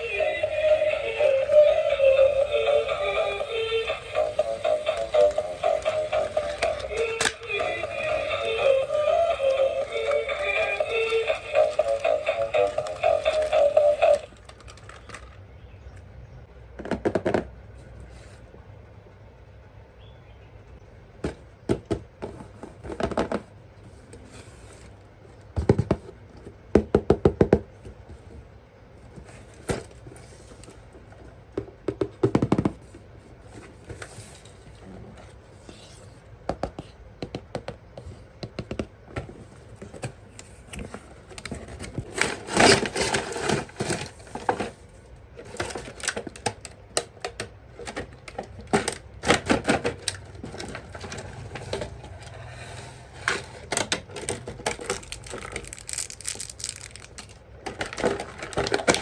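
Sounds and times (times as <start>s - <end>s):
plastic toys being handled: 0.0s - 15.4s, 27.9s - 36.9s, 38.0s - 59.0s.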